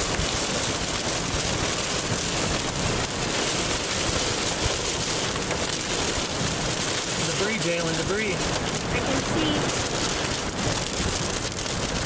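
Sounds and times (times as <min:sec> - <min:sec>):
heavy rain hissing: 0:00.0 - 0:12.0.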